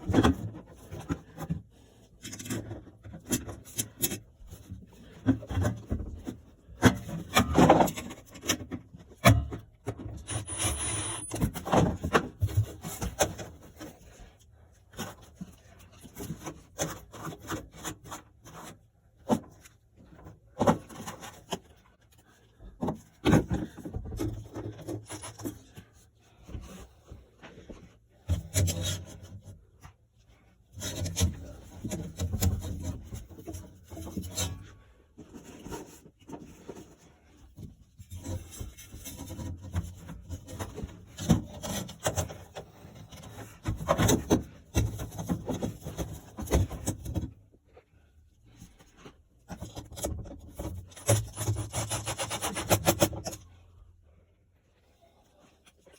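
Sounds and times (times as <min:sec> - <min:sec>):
tools and metal parts scraping: 0:09.9 - 0:11.9.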